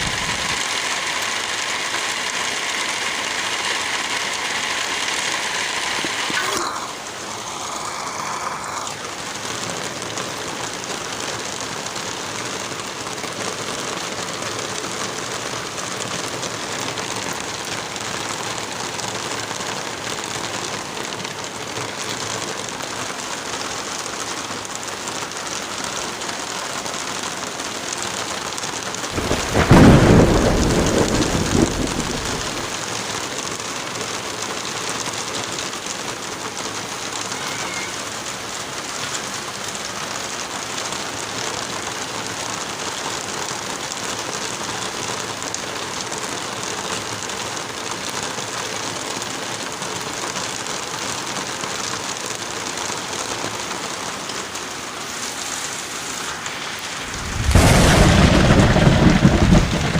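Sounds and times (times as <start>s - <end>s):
heavy rain: 0.0s - 59.9s
thunder rumble: 29.1s - 32.8s, 56.9s - 59.9s.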